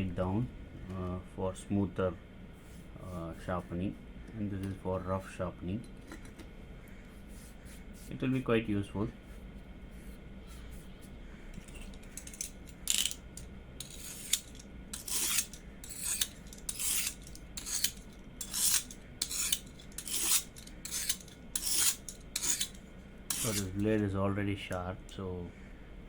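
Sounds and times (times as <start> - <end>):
blade scraping on sharpening stone: 11.6 - 24.0.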